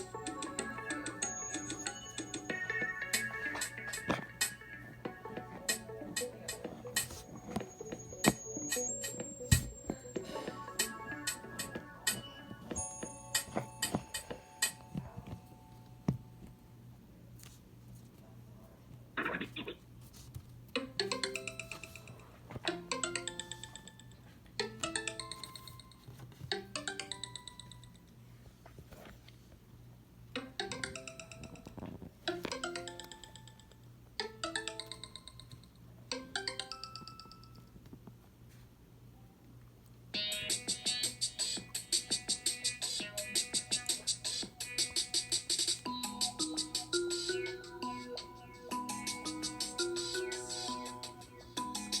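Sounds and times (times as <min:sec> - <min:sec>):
phone ringtone melody: 0:00.0 - 0:15.5, 0:20.8 - 0:26.1, 0:26.7 - 0:28.0, 0:30.4 - 0:37.6, 0:40.2 - 0:52.0.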